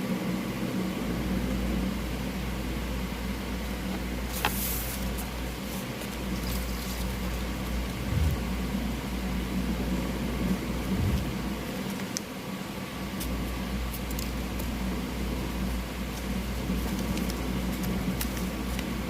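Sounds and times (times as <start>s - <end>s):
low mechanical hum: 0.0s - 19.0s
soft low thumps: 8.0s - 8.6s, 10.9s - 11.6s.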